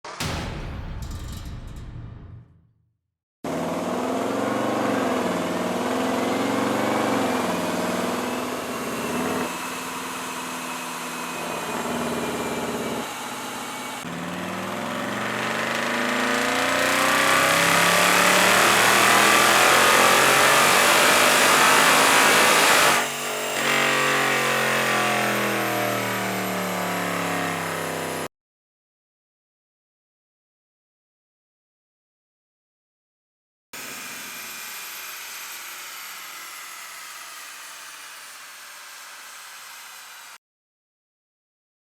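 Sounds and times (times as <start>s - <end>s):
car engine revving under load: 14.0s - 23.0s.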